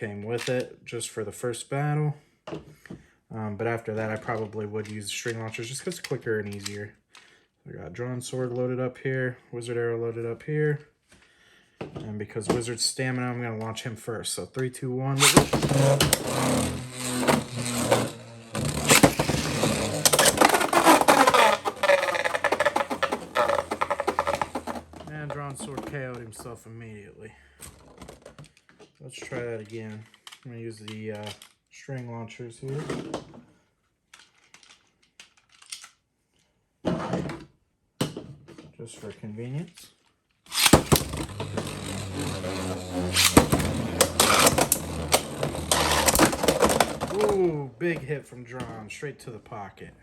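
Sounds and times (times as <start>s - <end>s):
launcher whir: 15.2s - 20.9s, 40.5s - 46.4s.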